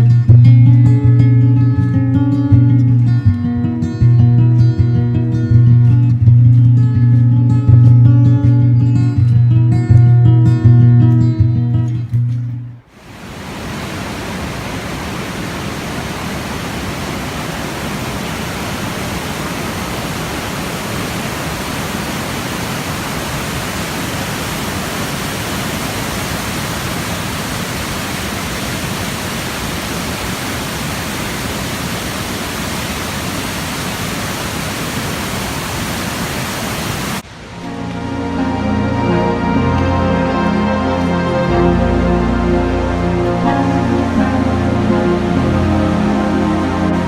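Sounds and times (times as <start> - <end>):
waterfall rushing: 12.9 - 47.0.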